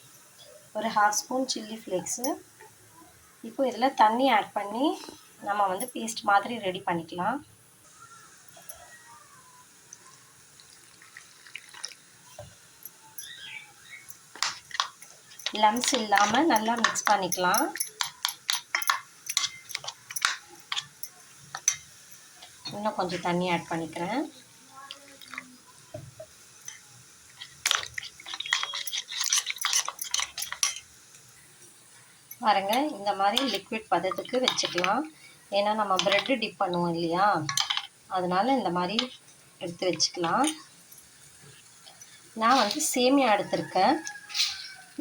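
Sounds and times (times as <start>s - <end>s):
spoon stirring wet batter: 7.9s - 31.6s, 32.2s - 45.0s
water pouring into a bowl: 8.0s - 15.5s, 24.7s - 30.2s
water dripping and trickling: 9.6s - 36.9s
spoon clicking against bowl: 14.1s - 22.8s, 27.6s - 30.9s, 36.0s - 36.3s.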